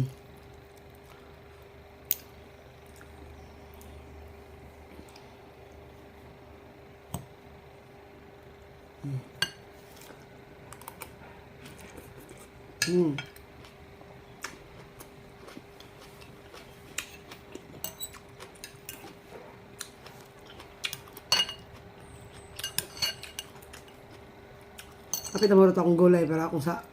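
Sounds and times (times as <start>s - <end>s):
faint hum: 0.0s - 26.9s
person humming: 9.0s - 9.4s
fork scraping a plate: 22.6s - 24.0s.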